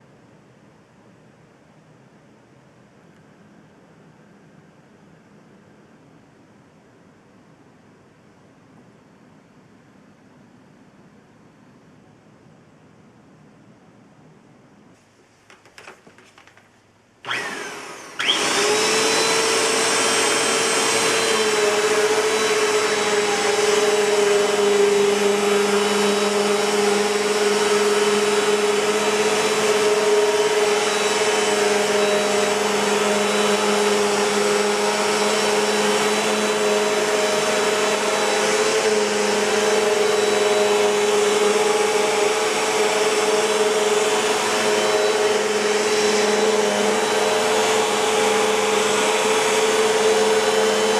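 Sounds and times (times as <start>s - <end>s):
vacuum cleaner motor running: 17.2s - 50.9s.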